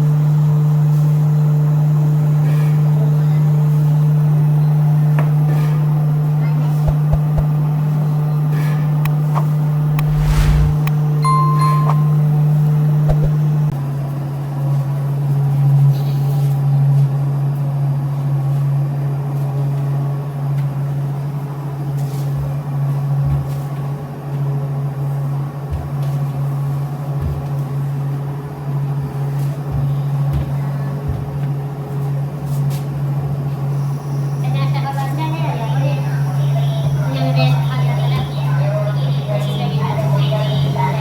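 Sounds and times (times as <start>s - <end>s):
low mechanical hum: 0.0s - 12.2s.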